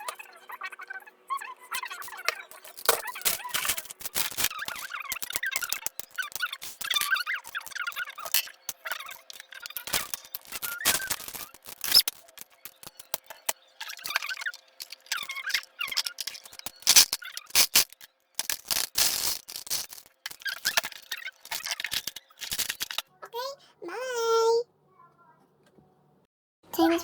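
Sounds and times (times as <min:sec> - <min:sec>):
packaging rustling: 0:02.6 - 0:23.0.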